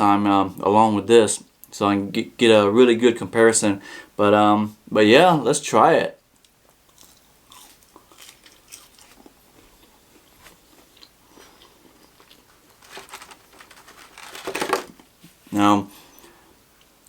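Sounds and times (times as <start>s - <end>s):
person chewing food: 6.4s - 12.8s.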